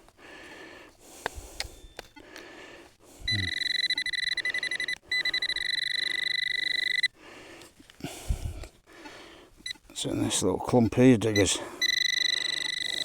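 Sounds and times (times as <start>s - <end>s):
metal detector pinpointer buzzing: 3.3s - 7.1s, 11.4s - 13.0s.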